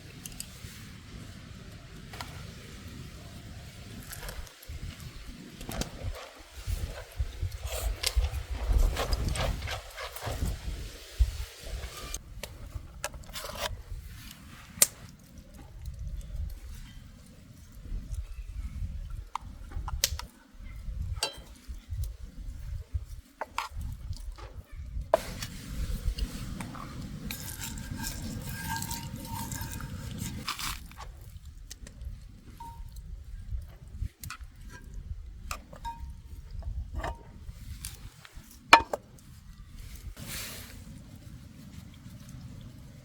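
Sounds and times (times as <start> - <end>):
metal cookware clinking: 21.2 - 21.7, 27.3 - 30.4, 35.7 - 36.3, 38.8 - 39.0
steady hissing: 25.2 - 30.5.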